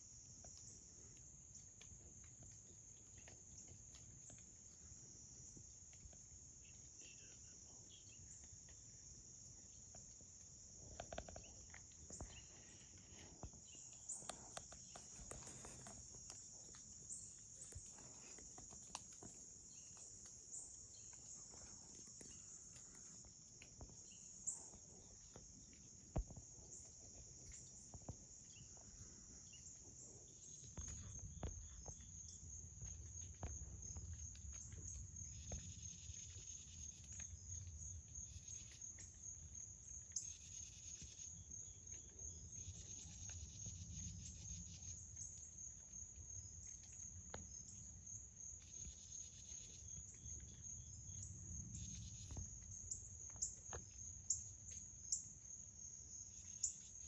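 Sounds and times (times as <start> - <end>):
crickets chirring: 0.0 - 57.0.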